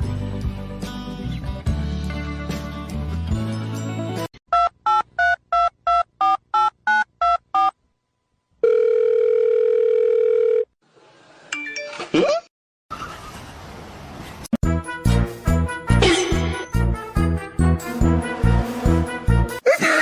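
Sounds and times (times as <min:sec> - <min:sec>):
music: 0:00.0 - 0:04.3, 0:14.6 - 0:19.6
steady telephone tone: 0:08.6 - 0:10.7.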